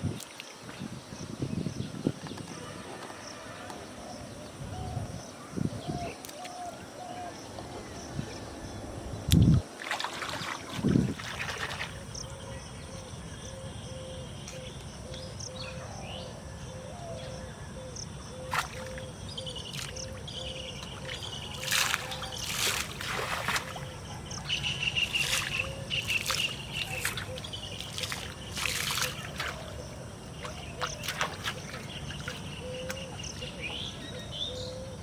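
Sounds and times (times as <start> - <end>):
water splashes: 9.3 - 12.3, 18.5 - 19.1, 19.7 - 33.9
birds chirping: 17.2 - 35.0.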